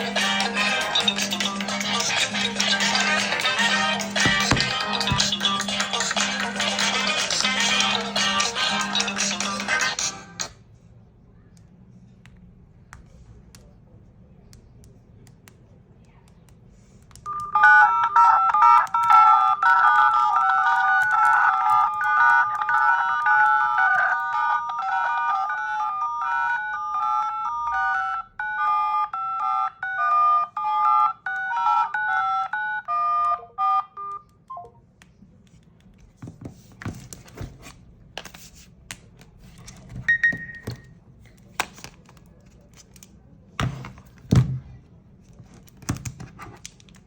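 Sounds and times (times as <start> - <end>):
phone ringtone melody: 0.0 - 9.9, 17.3 - 34.7
loud thumps: 4.2 - 5.4
brief beep: 40.1 - 40.8.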